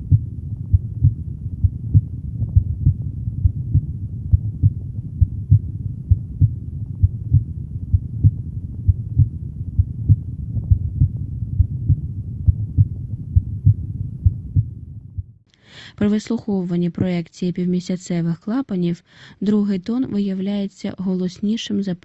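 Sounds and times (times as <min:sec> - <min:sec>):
heartbeat through stethoscope: 0:00.0 - 0:15.4.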